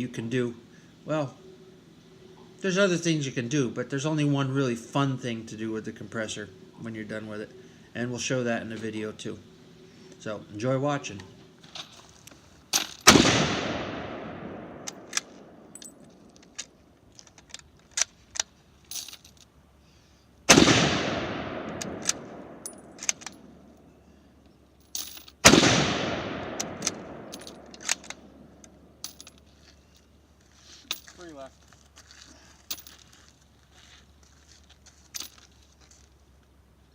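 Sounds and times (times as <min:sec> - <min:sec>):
echoing gunshots: 0:13.0 - 0:15.7, 0:20.5 - 0:23.6, 0:25.4 - 0:28.6
metallic gun handling clicks: 0:14.7 - 0:19.4, 0:21.6 - 0:23.9, 0:26.4 - 0:29.5.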